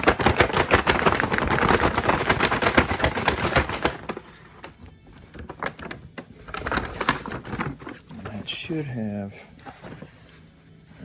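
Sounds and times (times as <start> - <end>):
bag shaken with rustling rattle: 0.0 - 4.8.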